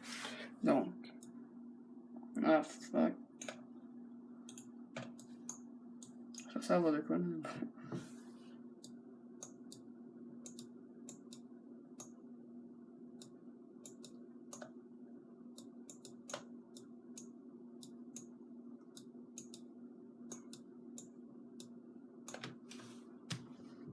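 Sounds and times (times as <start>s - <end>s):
steady low hum: 0.0s - 23.9s
computer clicks: 4.5s - 6.5s, 19.0s - 19.7s.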